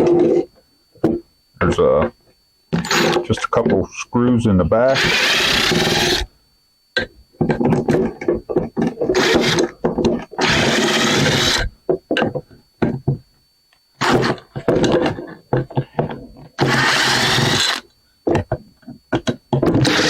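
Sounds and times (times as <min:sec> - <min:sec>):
screws scraping and grinding: 0:02.7 - 0:03.7, 0:04.9 - 0:06.3, 0:08.7 - 0:11.7, 0:14.0 - 0:15.4, 0:16.6 - 0:17.9, 0:19.7 - 0:20.0.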